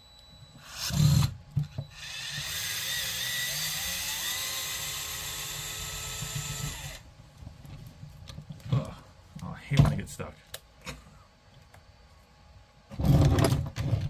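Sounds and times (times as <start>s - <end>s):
power driver motor whine: 0.0s - 7.1s.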